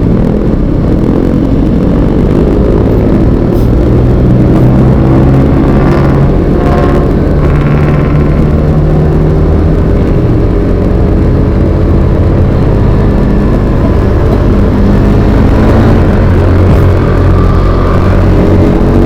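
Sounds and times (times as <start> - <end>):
road and wind noise: 0.0 - 19.0
vehicle engine droning: 0.0 - 19.0.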